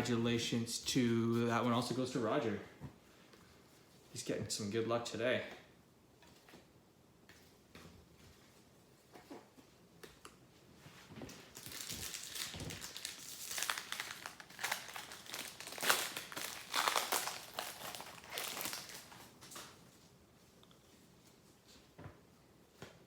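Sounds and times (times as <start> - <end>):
foil wrapper crinkling and tearing: 11.5 - 19.8.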